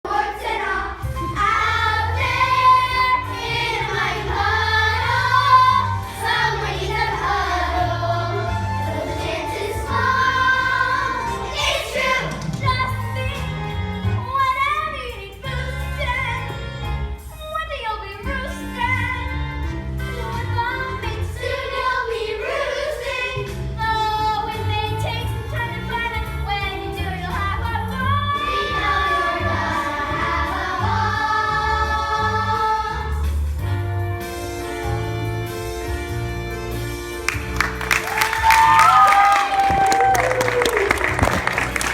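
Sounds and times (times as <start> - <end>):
young singers singing together: 0.1 - 12.6, 20.2 - 23.8, 28.2 - 33.4
instrumental accompaniment with pulsing bass: 23.4 - 41.9.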